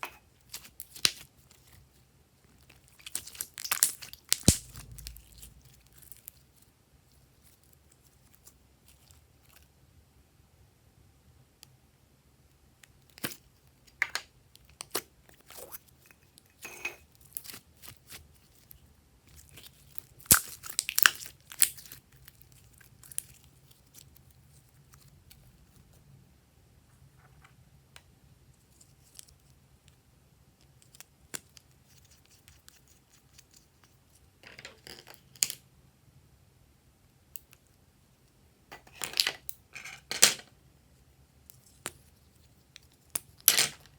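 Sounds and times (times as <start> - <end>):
slime crackling and popping: 2.6 - 6.4, 17.3 - 25.4.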